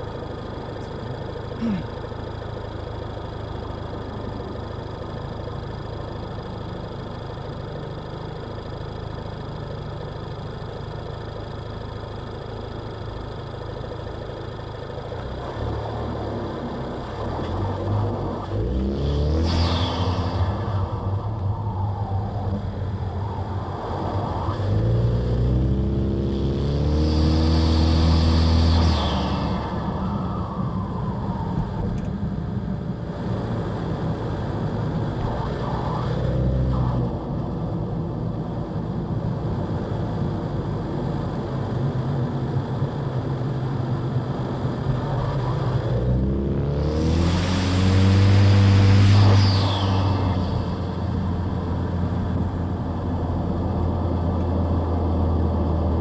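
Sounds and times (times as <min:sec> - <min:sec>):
car engine accelerating: 0:14.9 - 0:56.0.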